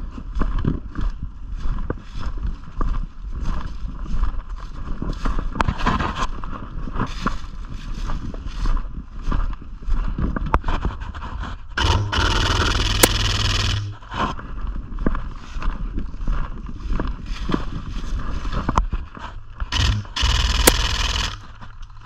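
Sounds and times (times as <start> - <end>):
sharp clicks: 11.8 - 14.0, 19.7 - 22.0.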